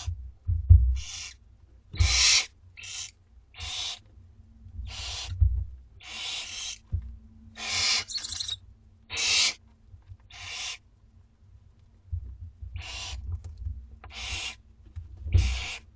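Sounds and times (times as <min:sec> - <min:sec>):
faint low thumps: 0:00.0 - 0:01.1, 0:04.6 - 0:05.9, 0:06.9 - 0:07.3, 0:12.0 - 0:14.0
owl nestlings hissing: 0:01.0 - 0:01.4, 0:02.0 - 0:04.0, 0:04.9 - 0:05.3, 0:06.0 - 0:06.8, 0:07.6 - 0:09.6, 0:10.3 - 0:10.8, 0:12.8 - 0:13.2, 0:14.1 - 0:14.6, 0:15.4 - 0:15.8.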